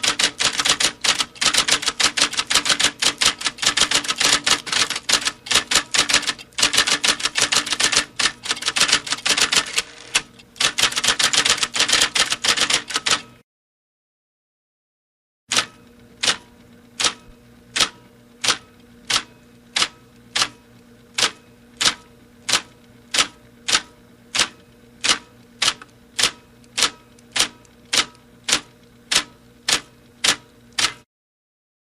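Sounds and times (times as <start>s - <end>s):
typewriter keys clacking: 0.0s - 13.3s, 24.4s - 31.0s
faint steady hum: 15.7s - 31.0s.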